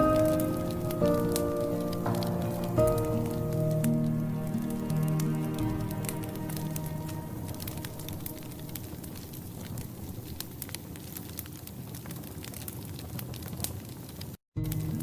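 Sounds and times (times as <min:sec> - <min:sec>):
steady hiss: 0:00.0 - 0:11.0
fireplace crackling and popping: 0:00.0 - 0:15.0.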